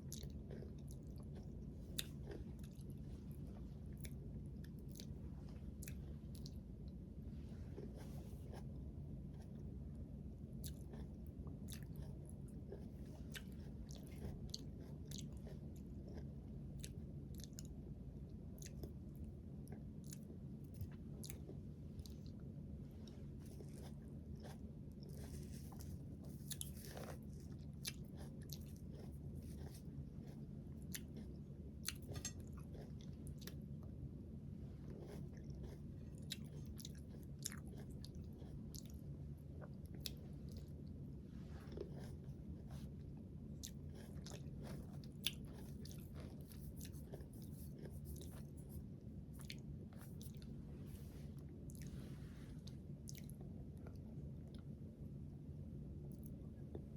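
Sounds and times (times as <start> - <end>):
person chewing food: 0.0 - 54.8
steady low hum: 0.0 - 56.9.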